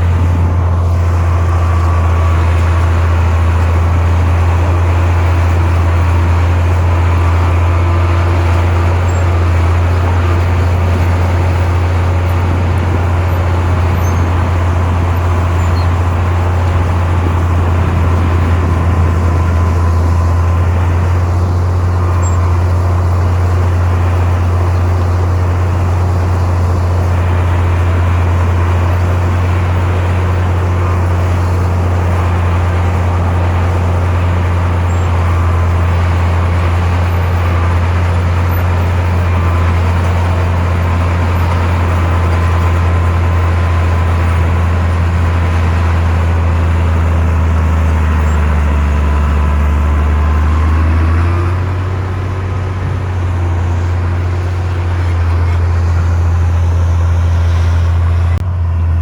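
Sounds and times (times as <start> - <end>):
heavy diesel engine running: 0.0 - 59.0.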